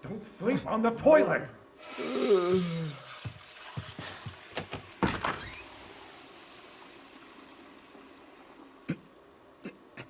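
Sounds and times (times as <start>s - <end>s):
running water: 1.8s - 10.0s.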